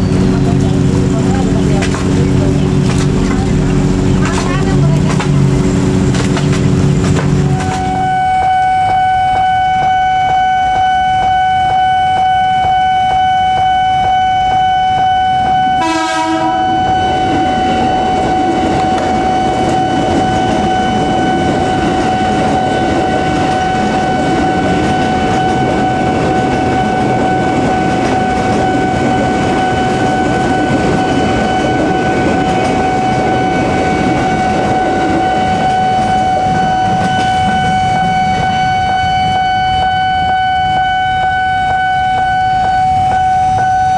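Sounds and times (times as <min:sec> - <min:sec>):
heavy rain: 0:00.0 - 0:08.1
train wheels clattering on rails: 0:00.0 - 0:43.9
short horn blast: 0:07.7 - 0:18.0.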